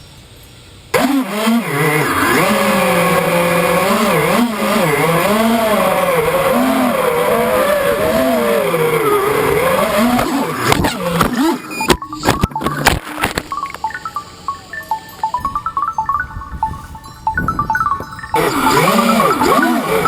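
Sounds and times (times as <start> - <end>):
quadcopter motors whining: 1.0 - 12.4, 17.0 - 20.0.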